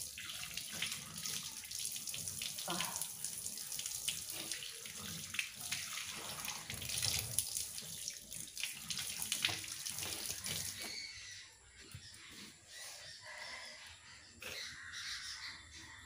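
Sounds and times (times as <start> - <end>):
tap water splashing into sink: 0.0 - 10.9.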